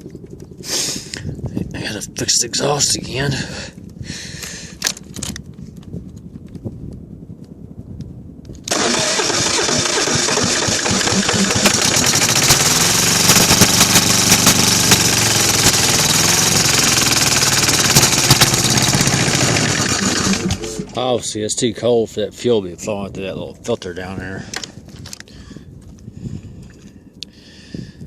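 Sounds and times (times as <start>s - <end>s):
diesel engine starting and running: 8.7s - 21.3s.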